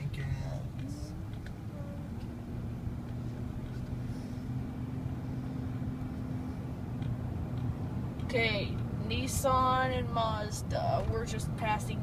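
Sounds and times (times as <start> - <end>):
road rumble: 0.0 - 12.0
truck engine hum: 0.0 - 12.0.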